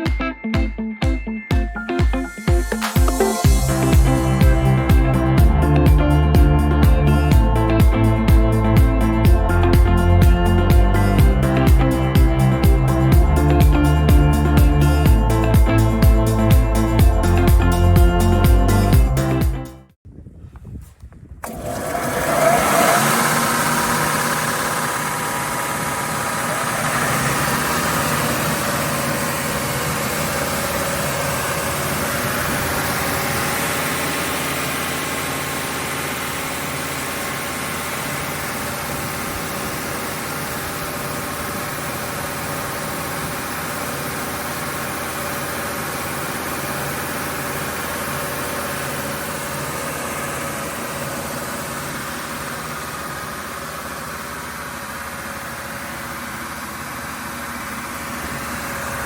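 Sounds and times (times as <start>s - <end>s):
sander mechanical hum: 20.7s - 59.0s.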